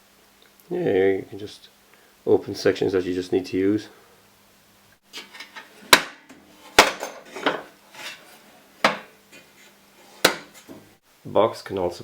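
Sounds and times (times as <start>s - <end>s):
metal toolbox clanks: 6.7s - 7.7s.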